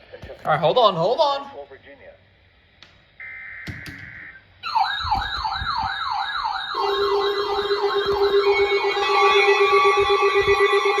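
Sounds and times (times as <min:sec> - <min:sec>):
alert siren falling sweep: 0:03.2 - 0:11.0.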